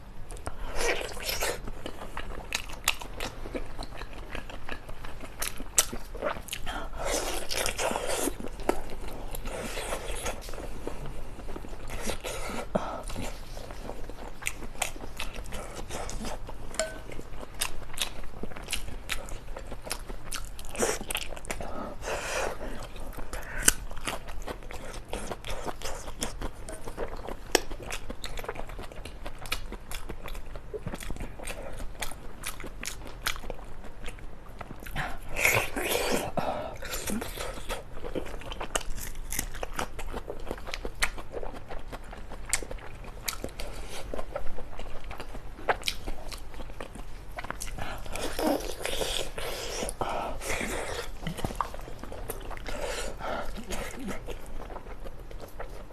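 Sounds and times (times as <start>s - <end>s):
person biting and chewing: 34.8s - 55.8s.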